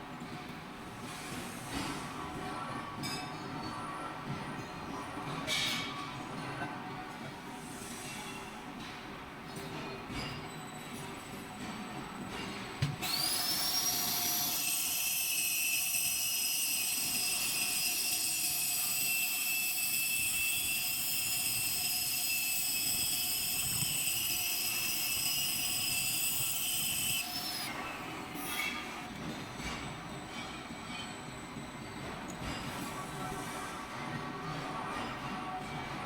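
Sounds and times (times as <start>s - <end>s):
grinder high-pitched whine: 13.0s - 28.8s.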